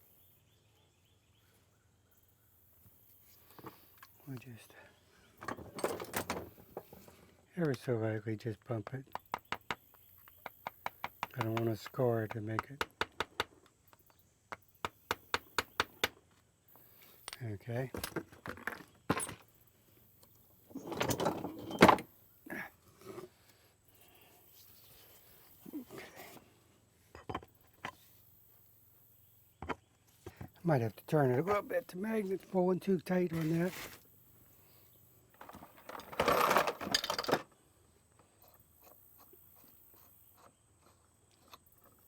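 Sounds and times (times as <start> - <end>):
metal scraping and clinking: 20.7 - 22.0, 35.4 - 37.4
metal sliding and scraping: 20.7 - 22.0.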